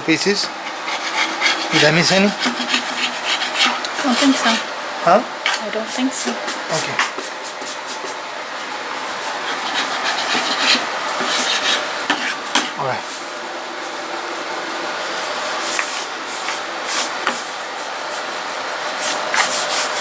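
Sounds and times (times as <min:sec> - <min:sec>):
sandpaper rasping on wood: 0:00.7 - 0:04.6, 0:09.2 - 0:12.8, 0:15.2 - 0:20.0.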